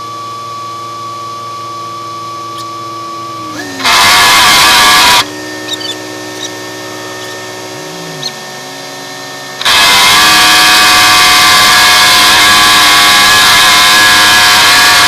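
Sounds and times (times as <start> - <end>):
road-paving machinery engine hum: 2.4 - 13.1
loud machine noise: 2.5 - 15.0.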